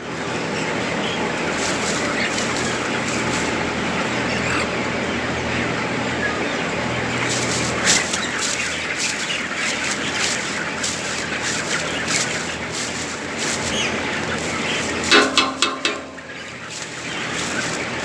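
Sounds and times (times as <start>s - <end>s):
chickens clucking: 0.2s - 18.0s
steady low hum: 0.5s - 18.0s
wings flapping: 1.4s - 4.1s, 7.0s - 18.0s.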